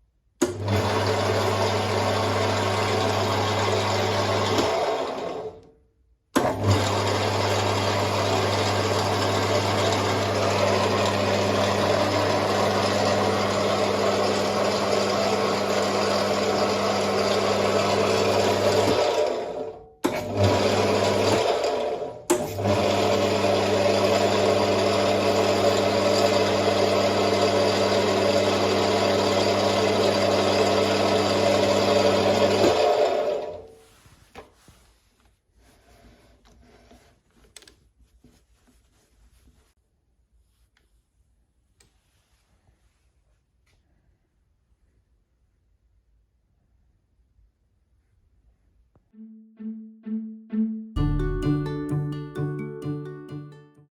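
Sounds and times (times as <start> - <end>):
lathe motor humming: 6.8 - 33.6.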